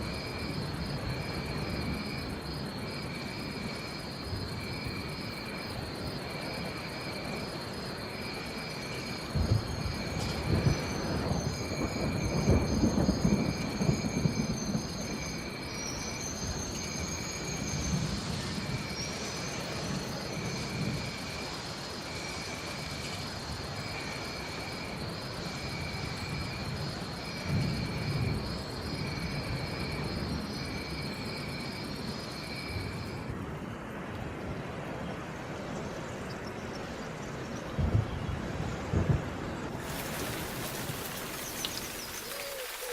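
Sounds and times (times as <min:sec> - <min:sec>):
steady rain: 0:00.0 - 0:42.9
thunder rumbling: 0:09.2 - 0:19.2, 0:37.8 - 0:42.9
high whistling calls: 0:39.9 - 0:42.9.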